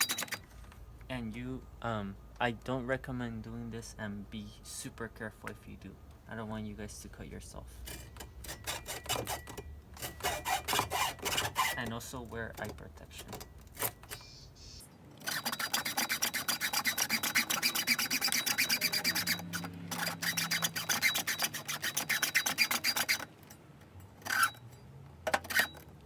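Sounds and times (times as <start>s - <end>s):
short scrape: 7.9s - 11.9s, 14.1s - 23.3s
blade sawing through cable: 7.9s - 12.7s, 15.2s - 23.3s, 24.2s - 24.6s, 25.4s - 25.8s.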